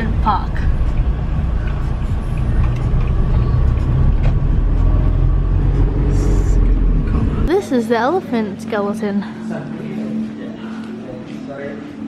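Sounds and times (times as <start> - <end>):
vehicle engine and road noise: 0.0 - 9.0.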